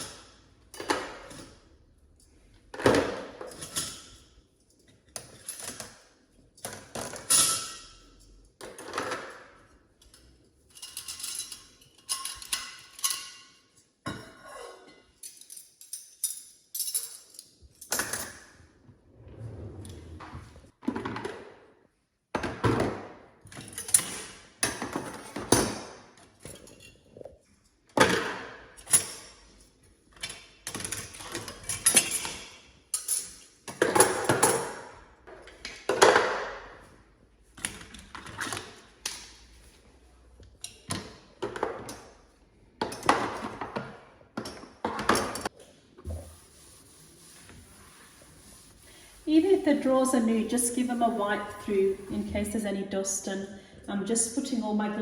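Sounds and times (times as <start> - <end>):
utensils and dishes clattering: 4.8 - 18.7, 28.0 - 37.0, 42.8 - 45.6.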